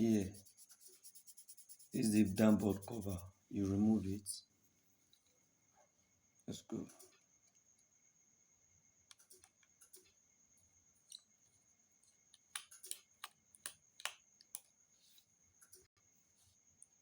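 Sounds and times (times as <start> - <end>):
small tools clicking on phone: 9.1 - 10.2, 12.2 - 14.8.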